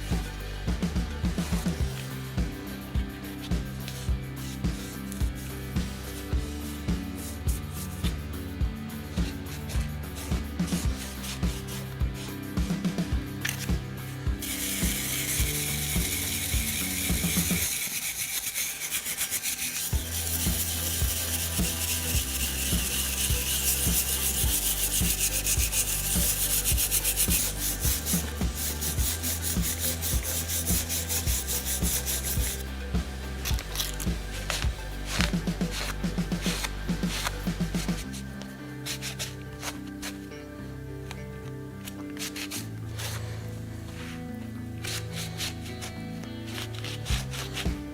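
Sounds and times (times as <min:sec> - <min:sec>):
background music with beat: 0:00.0 - 0:47.9
hand sanding metal: 0:01.3 - 0:38.2.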